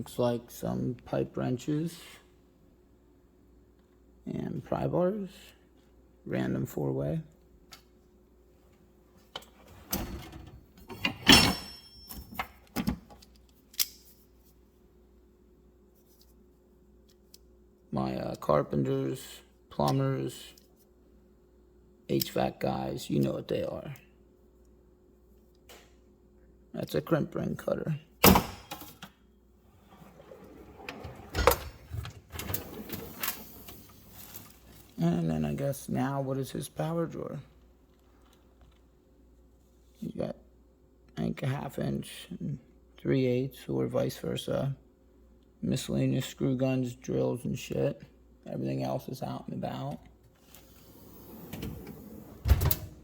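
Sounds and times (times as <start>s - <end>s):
metal tools clanking in drawer: 10.9s - 12.5s.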